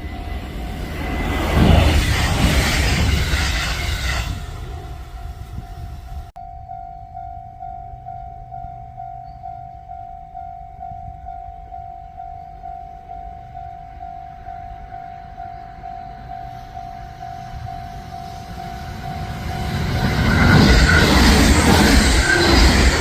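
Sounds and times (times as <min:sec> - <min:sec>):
low rumble: 0:00.0 - 0:10.0
level crossing warning bell: 0:04.9 - 0:23.0.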